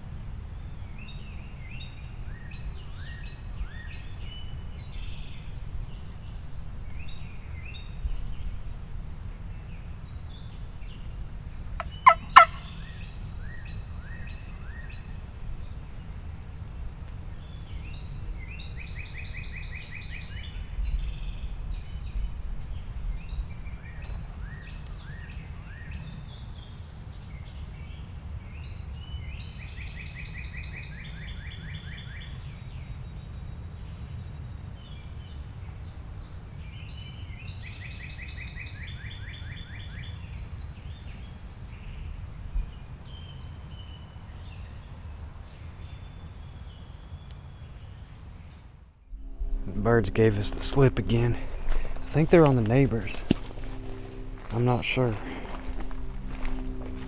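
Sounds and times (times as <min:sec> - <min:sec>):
low wind rumble: 0:00.0 - 0:26.6, 0:48.1 - 0:57.0
songbirds chirping and trilling: 0:09.6 - 0:30.9, 0:50.3 - 0:57.0
turkey gobble: 0:11.8 - 0:12.7.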